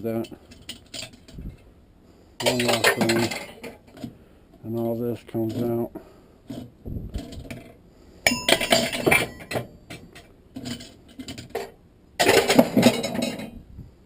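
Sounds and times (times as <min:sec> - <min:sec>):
metal parts clattering: 0:00.4 - 0:01.6, 0:02.4 - 0:04.1, 0:06.5 - 0:13.6.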